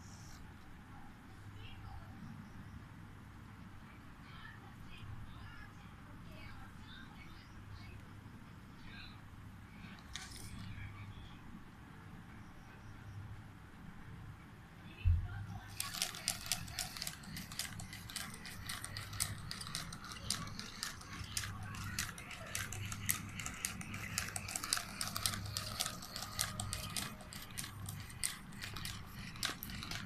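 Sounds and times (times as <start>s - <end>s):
toy mechanism clicking: 15.7s - 30.0s.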